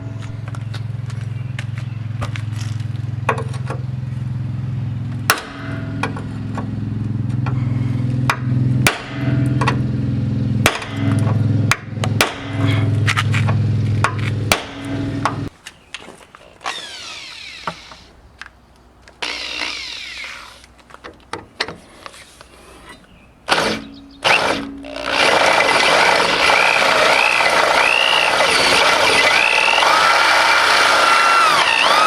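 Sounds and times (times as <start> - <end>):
steady low hum: 0.0 - 15.5
sledgehammer striking metal punch: 5.2 - 15.5, 23.5 - 25.2.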